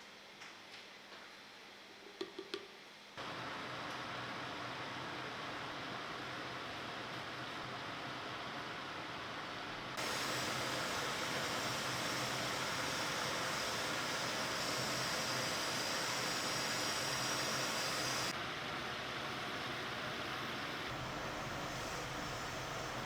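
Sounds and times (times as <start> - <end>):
compressed air hiss: 10.0 - 18.3, 20.9 - 23.0.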